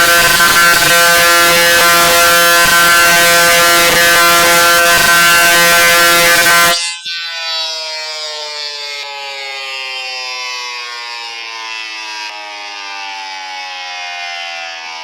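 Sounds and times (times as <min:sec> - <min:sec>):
siren buzzing and winding down: 0:00.0 - 0:15.0.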